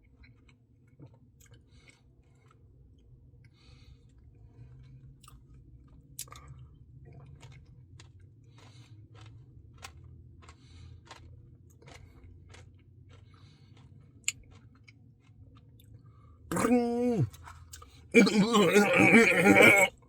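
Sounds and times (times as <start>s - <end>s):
chewing and mouth sounds: 6.2s - 15.9s, 16.5s - 19.9s.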